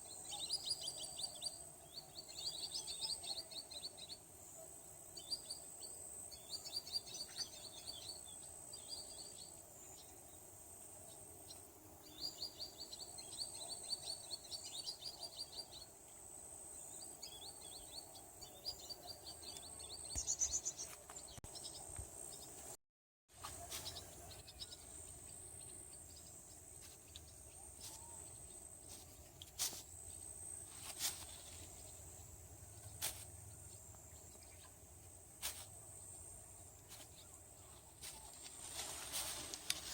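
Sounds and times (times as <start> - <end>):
small birds trilling: 5.1 - 10.4, 11.0 - 16.0, 16.8 - 22.6, 23.4 - 29.8.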